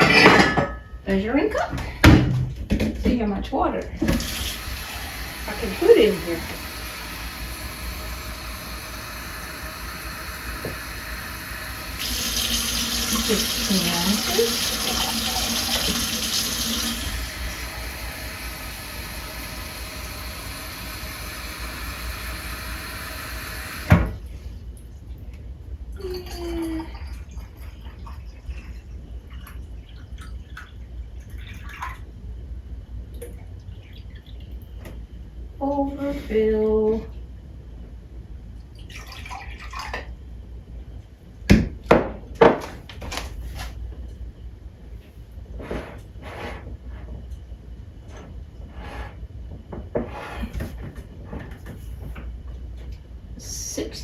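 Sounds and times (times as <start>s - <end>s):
tap water running: 4.0s - 24.2s.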